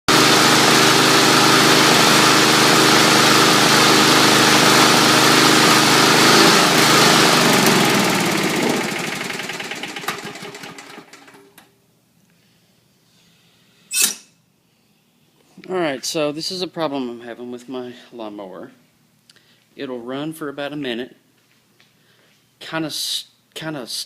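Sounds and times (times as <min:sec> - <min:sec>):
mower engine sputtering: 0:00.1 - 0:11.5.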